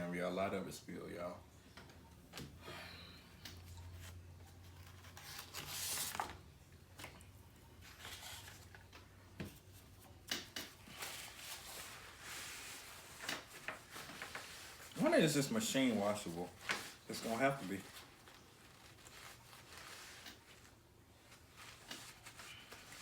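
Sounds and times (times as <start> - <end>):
cloth rustling: 7.8 - 23.0.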